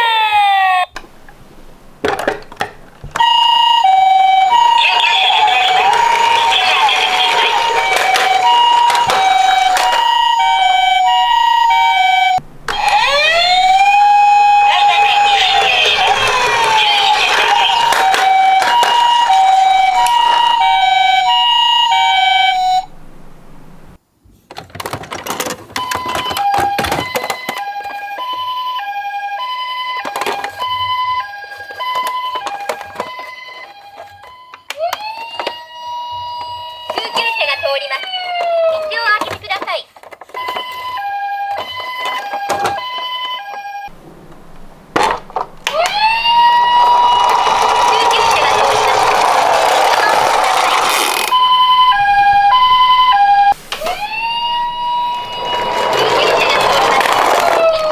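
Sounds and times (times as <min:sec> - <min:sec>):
ambulance hi-lo siren: 0:00.0 - 0:01.0, 0:03.1 - 0:22.9, 0:25.8 - 0:39.6, 0:40.3 - 0:44.0, 0:45.0 - 0:57.9
toy cars clattering down slope: 0:02.0 - 0:11.9, 0:12.7 - 0:21.3, 0:36.3 - 0:43.7, 0:44.3 - 0:57.9.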